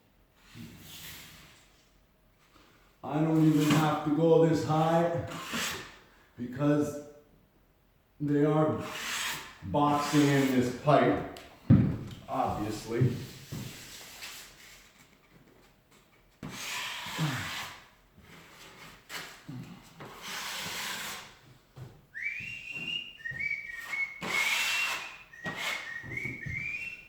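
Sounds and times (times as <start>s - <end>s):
taping knife scraping wall: 3.4s - 4.1s, 5.1s - 6.0s, 8.8s - 10.9s, 16.4s - 21.5s, 22.7s - 27.0s
person whistling a tune: 22.1s - 27.0s.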